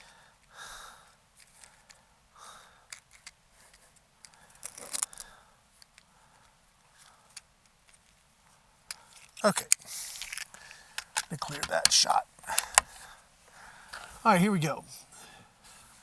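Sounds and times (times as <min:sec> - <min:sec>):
cluster of sharp clicks: 0:09.4 - 0:12.9
equipment clicks and taps: 0:11.0 - 0:12.9.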